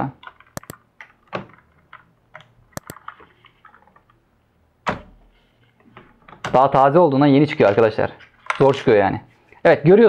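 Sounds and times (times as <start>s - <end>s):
keycaps clicking off keyboard: 0.2s - 4.1s.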